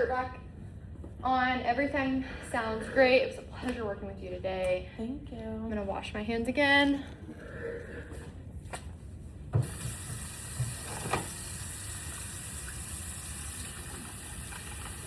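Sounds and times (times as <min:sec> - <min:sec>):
water running into sink: 0:09.6 - 0:15.0.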